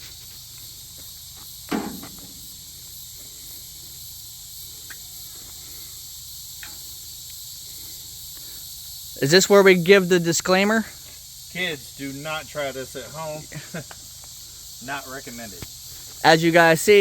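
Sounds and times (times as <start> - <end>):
steady high hiss: 0.0 - 17.0
faint ticks: 4.8 - 5.0, 6.6 - 7.5.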